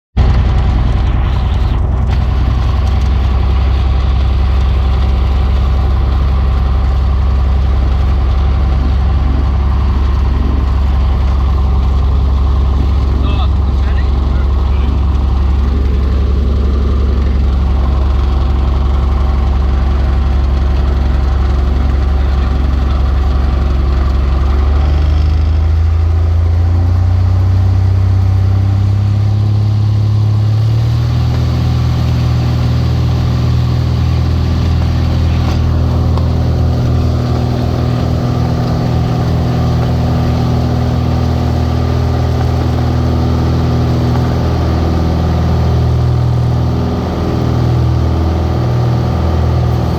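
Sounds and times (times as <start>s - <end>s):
piston aircraft engine and propeller: 0.2s - 49.9s.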